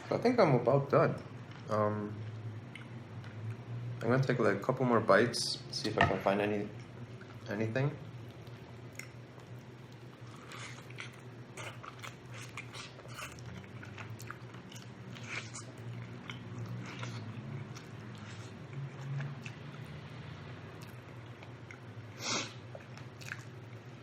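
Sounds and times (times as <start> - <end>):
person chewing food: 1.4 - 3.6, 8.1 - 20.1, 20.7 - 24.0.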